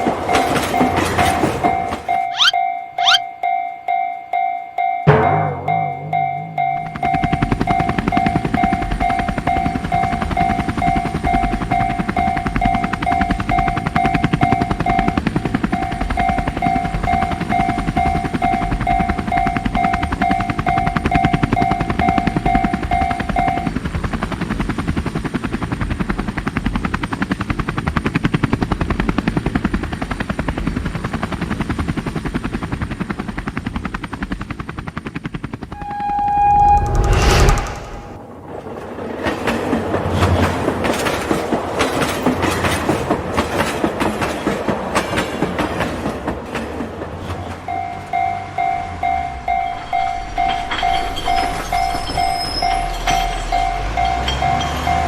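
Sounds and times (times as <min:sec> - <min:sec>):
railroad crossing alarm dinging: 0:00.0 - 0:23.8, 0:47.2 - 0:55.0
held horn-like note: 0:35.7 - 0:38.2.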